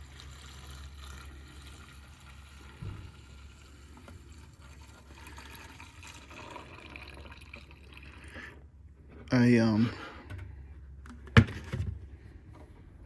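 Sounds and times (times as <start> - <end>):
liquid trickling into container: 0.0 - 8.6.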